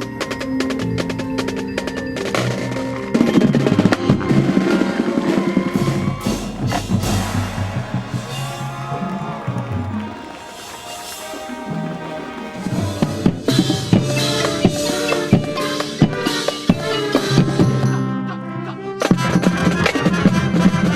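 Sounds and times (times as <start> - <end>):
rapid clicking percussion: 5.7 - 14.8
snare and bass drums: 5.7 - 14.8
marching band playing: 5.7 - 16.6.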